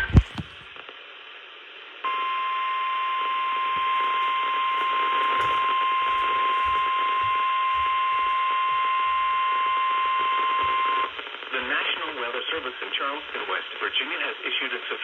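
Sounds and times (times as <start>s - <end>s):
receiver hiss: 0.0s - 15.0s
steady piercing alarm tone: 2.1s - 11.2s.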